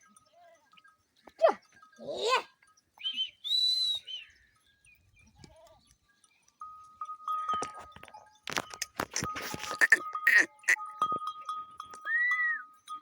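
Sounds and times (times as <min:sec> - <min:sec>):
goats bleating: 0:09.2 - 0:10.8.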